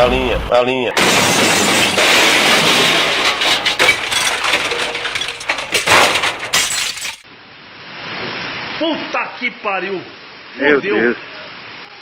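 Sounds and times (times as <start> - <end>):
crash of cracking and breaking: 1.0 - 7.3.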